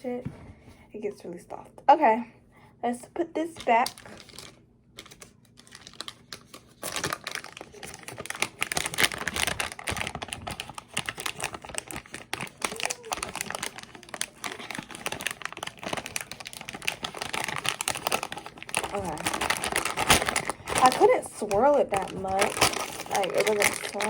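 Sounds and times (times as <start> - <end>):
sticky slime clicks and crackles: 12.1 - 14.8.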